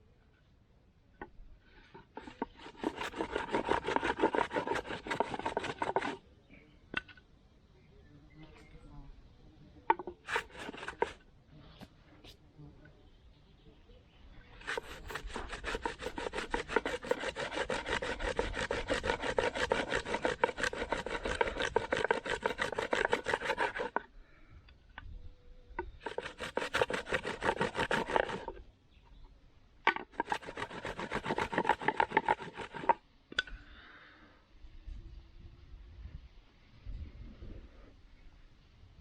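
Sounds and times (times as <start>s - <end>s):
wooden boards scraping over cotton: 1.7s - 6.2s, 10.2s - 11.2s, 14.6s - 24.0s, 26.0s - 28.6s, 30.0s - 33.0s.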